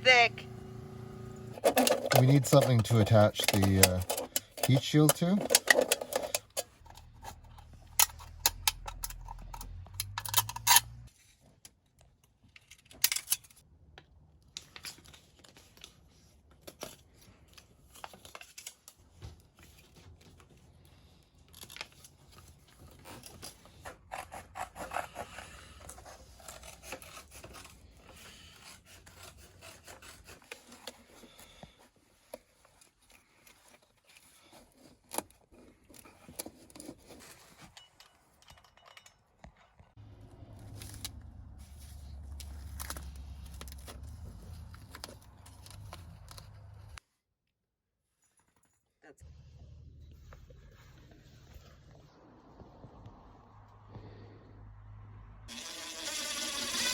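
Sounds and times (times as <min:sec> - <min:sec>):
tool clicks taps and scraping: 0:01.6 - 0:11.0.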